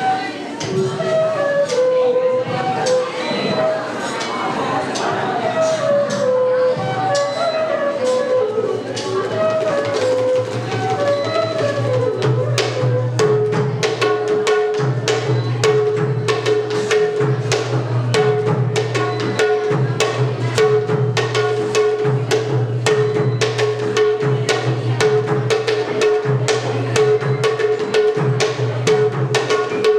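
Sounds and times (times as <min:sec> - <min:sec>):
wind instrument melody: 0:00.0 - 0:04.2, 0:05.0 - 0:18.0
fast hand drumming: 0:08.1 - 0:29.9.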